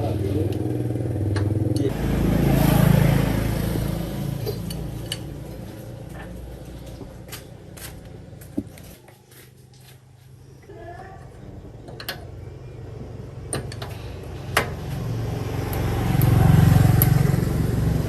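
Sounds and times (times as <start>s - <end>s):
motor engine hum: 0.0s - 9.0s, 10.5s - 18.0s.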